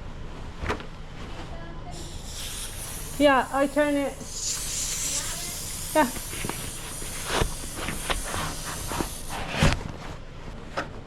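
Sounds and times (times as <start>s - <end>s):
steady hiss: 1.9s - 9.8s.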